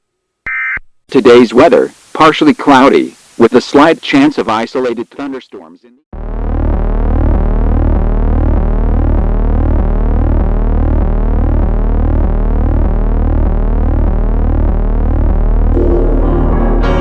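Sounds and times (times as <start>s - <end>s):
synthesized alert tone: 15.8s - 17.0s.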